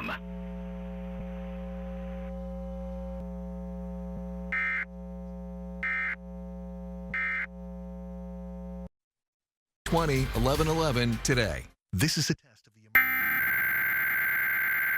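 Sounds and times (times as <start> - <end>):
electrical buzz: 0.0 - 8.9
warbling digital data tones: 13.0 - 14.9.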